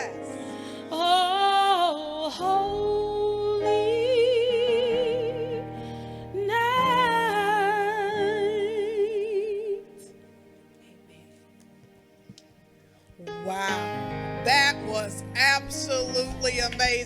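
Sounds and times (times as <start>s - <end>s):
woman singing with vibrato: 0.0s - 10.0s
held accompaniment chords: 0.0s - 17.0s.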